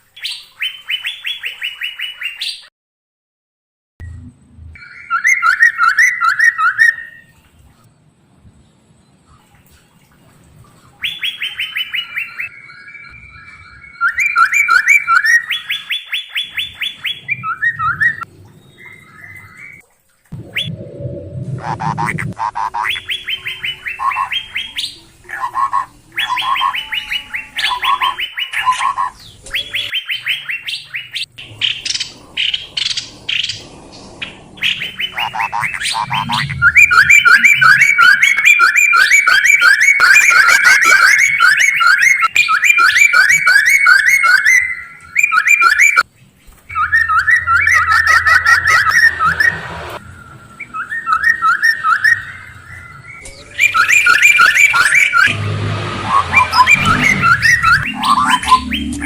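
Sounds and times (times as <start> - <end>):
songbird whistled notes: 11.0 - 19.8, 34.6 - 46.0, 46.7 - 55.3, 56.1 - 59.0.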